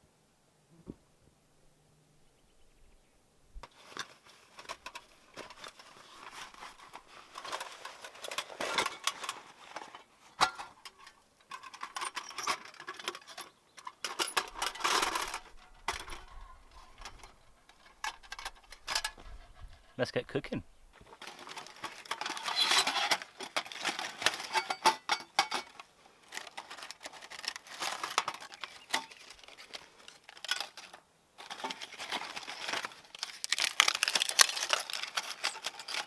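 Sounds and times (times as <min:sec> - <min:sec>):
gear rustling: 0:21.0 - 0:36.0.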